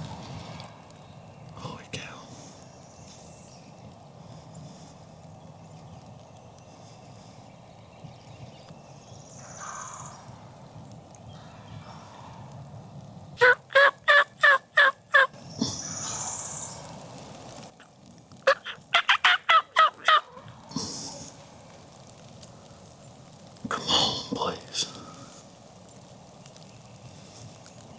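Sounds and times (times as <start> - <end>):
turkey calling: 13.4 - 16.8, 17.8 - 21.3.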